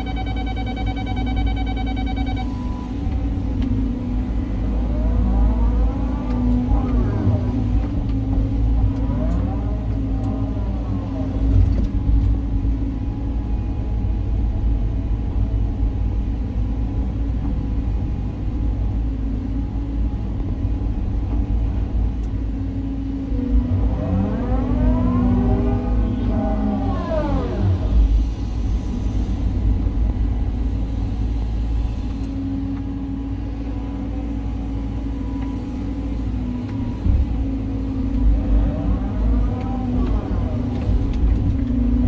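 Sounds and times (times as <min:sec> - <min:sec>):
excavator diesel engine and hydraulics: 0:00.0 - 0:42.0.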